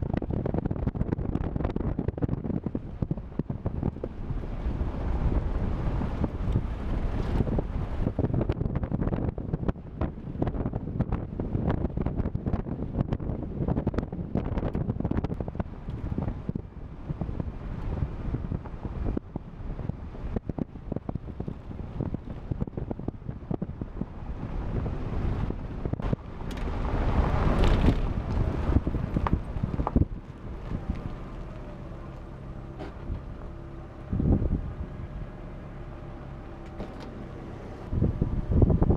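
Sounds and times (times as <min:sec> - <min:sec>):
wind buffeting microphone: 0:00.0 - 0:38.9
vehicle knocks and rattles: 0:25.4 - 0:31.6, 0:32.7 - 0:33.5, 0:36.6 - 0:37.3.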